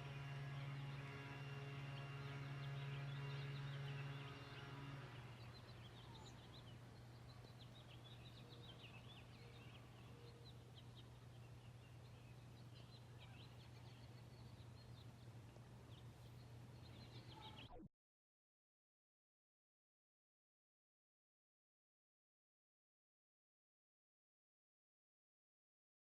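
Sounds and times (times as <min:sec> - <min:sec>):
steady low hum: 0:00.0 - 0:17.8
small birds chirping: 0:00.0 - 0:17.9.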